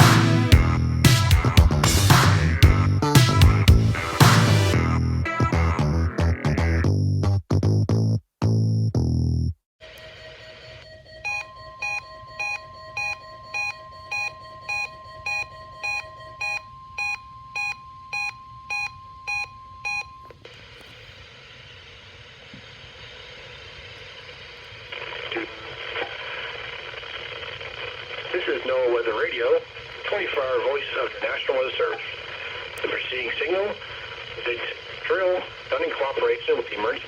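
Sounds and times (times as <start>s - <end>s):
steady warning alarm tone: 9.8s - 20.4s
electronic alert beeps: 10.9s - 20.3s
radio static hiss: 20.4s - 37.0s.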